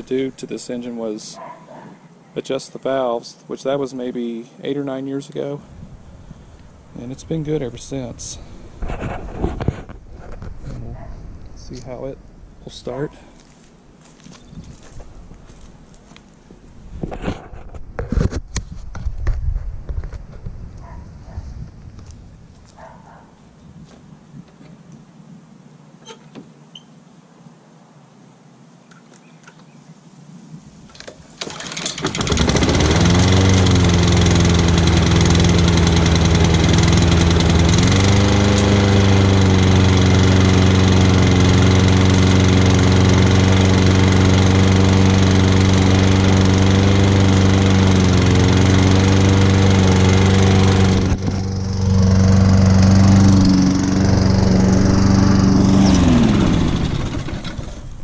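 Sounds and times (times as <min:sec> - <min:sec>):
lawn mower engine running: 0:31.0 - 0:58.0.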